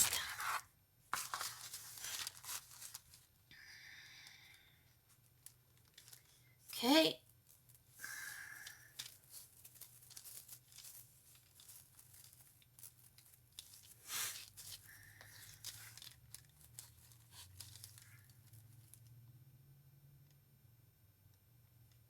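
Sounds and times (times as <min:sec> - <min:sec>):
paper tearing rustle: 0:00.0 - 0:00.6, 0:01.2 - 0:03.2, 0:07.8 - 0:18.6
small clicks and rustles: 0:01.2 - 0:03.4, 0:05.1 - 0:19.2.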